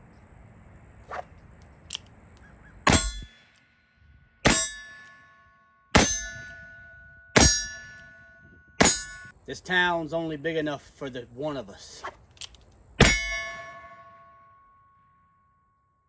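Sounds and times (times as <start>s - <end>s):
bullet clanging on steel target: 2.9s - 3.4s, 4.4s - 9.4s, 12.5s - 14.8s.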